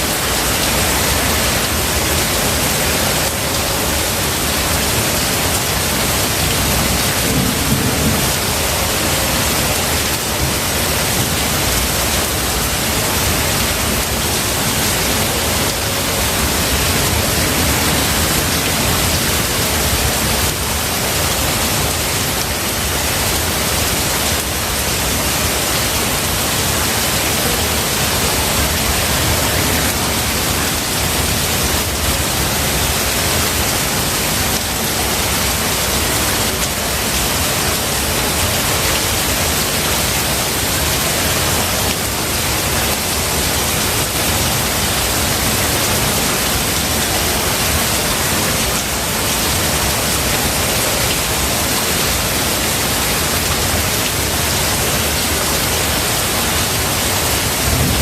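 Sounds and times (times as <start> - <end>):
heavy rain falling: 0.0 - 58.0
low rumble of thunder: 6.8 - 8.7, 57.6 - 58.0.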